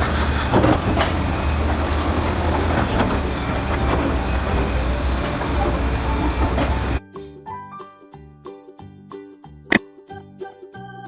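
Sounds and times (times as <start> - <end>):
bulldozer diesel engine rumbling: 0.0 - 7.0.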